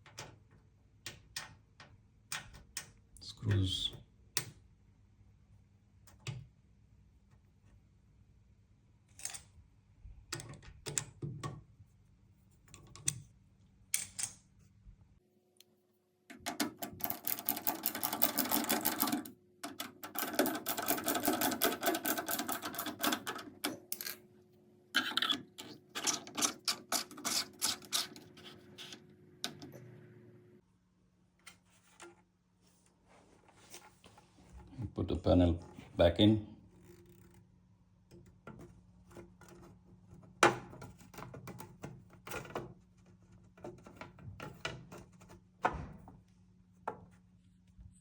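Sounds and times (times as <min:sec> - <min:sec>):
scattered clicks and knocks: 0:16.3 - 0:24.2.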